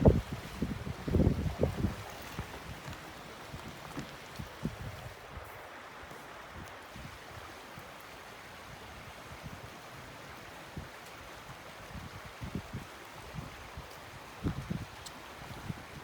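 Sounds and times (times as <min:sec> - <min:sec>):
wind buffeting microphone: 0:00.0 - 0:05.5, 0:11.8 - 0:16.0
creek water flowing: 0:00.0 - 0:16.0.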